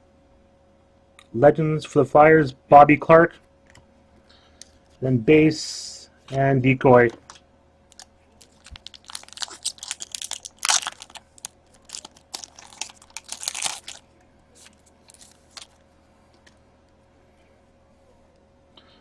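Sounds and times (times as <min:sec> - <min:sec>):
foil wrapper tearing and crinkling: 0:07.9 - 0:14.0, 0:14.6 - 0:15.8
cards clicking and rustling: 0:08.0 - 0:14.0, 0:14.6 - 0:15.8.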